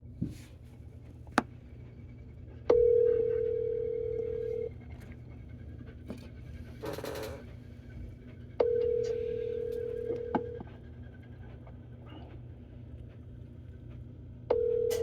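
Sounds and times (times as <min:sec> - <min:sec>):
telephone ringback tone: 0:02.7 - 0:04.8, 0:08.6 - 0:10.5, 0:14.5 - 0:15.0
phone line click: 0:08.6 - 0:10.5, 0:14.5 - 0:15.0.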